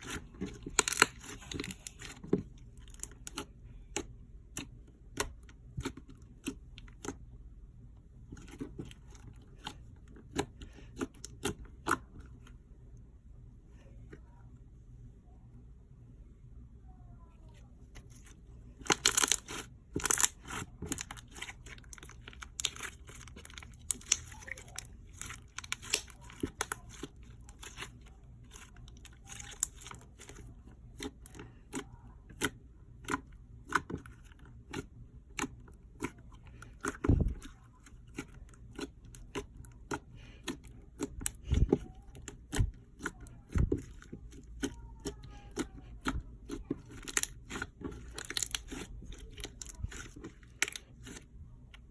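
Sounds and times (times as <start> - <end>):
slime clicking and popping: 18.8 - 27.9.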